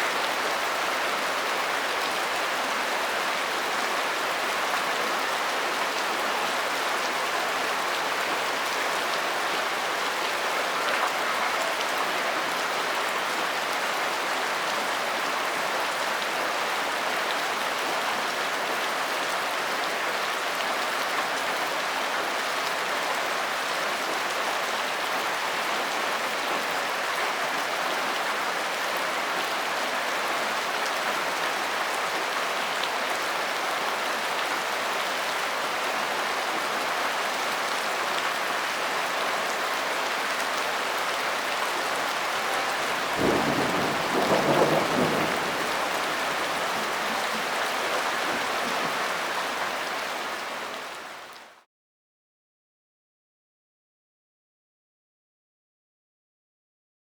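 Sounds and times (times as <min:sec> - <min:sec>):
steady rain falling: 0:00.0 - 0:51.6
low rumble of thunder: 0:42.9 - 0:47.5.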